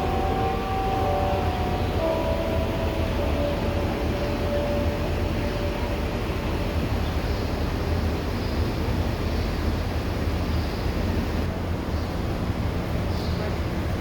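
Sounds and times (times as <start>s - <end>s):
church bell hum: 0.0s - 8.0s
steady low rumble: 0.0s - 9.2s.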